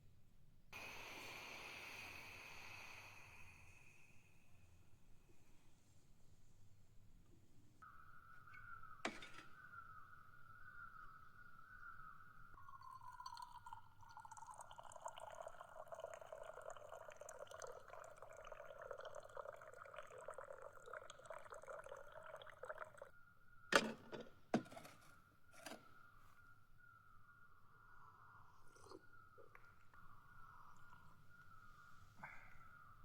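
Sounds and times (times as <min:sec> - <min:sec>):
cup being set down: 0:09.0 - 0:09.6, 0:23.7 - 0:25.0
tea pouring: 0:12.6 - 0:23.1, 0:28.6 - 0:29.6.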